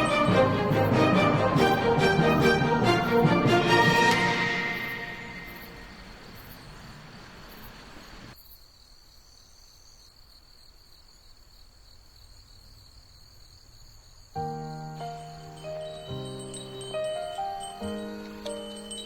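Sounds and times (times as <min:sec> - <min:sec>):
background music: 0:00.0 - 0:06.2, 0:14.4 - 0:19.0.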